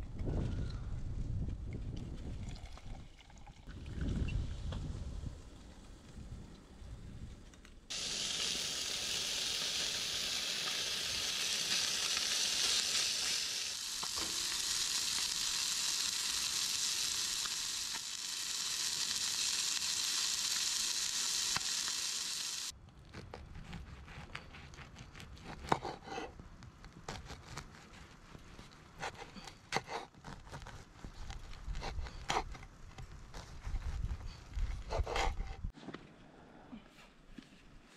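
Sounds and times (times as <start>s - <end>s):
food sizzling in a frying pan: 7.9s - 22.7s.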